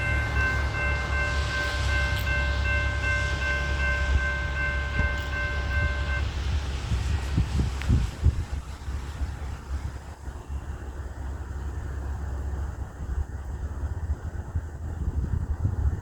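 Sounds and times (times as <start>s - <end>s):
train horn long chord: 0.0s - 6.2s
train rumbling: 0.0s - 16.0s.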